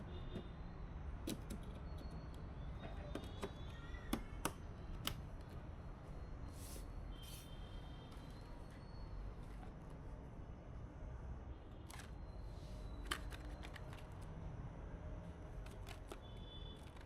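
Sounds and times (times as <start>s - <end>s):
small hard parts clicking: 13.0s - 14.3s, 15.6s - 17.0s.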